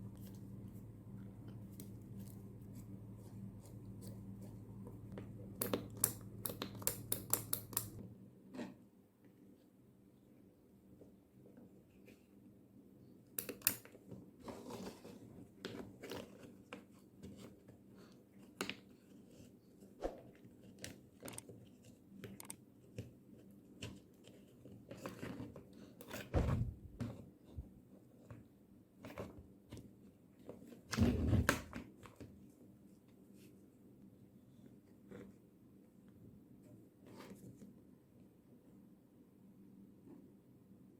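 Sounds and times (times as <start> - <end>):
heavy thumps: 26.3 - 27.0.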